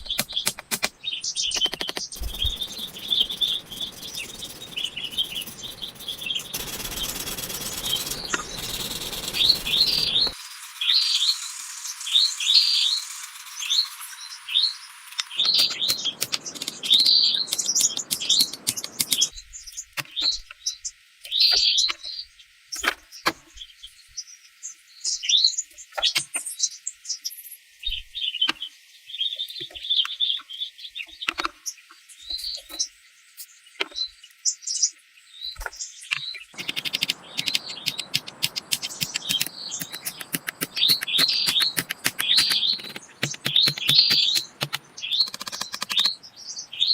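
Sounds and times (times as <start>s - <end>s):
sharp clicks and taps: 0.0s - 1.0s, 1.6s - 10.4s, 15.2s - 19.3s, 36.6s - 46.2s
songbirds chirping: 0.0s - 46.9s.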